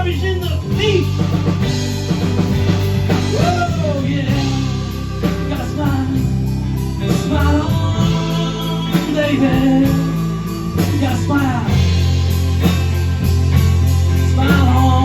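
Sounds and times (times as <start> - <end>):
bass guitar: 0.0 - 15.0
drum kit: 0.0 - 15.0
electric guitar: 0.0 - 15.0
person singing: 3.1 - 15.0.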